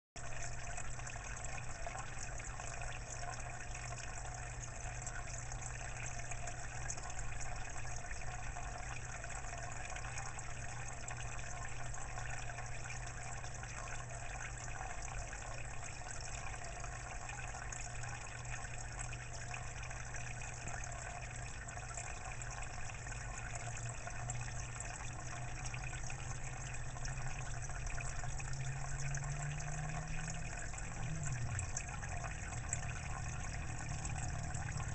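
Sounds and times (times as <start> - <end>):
water pump humming: 0.2 - 34.9
water trickling and splashing: 0.2 - 34.9.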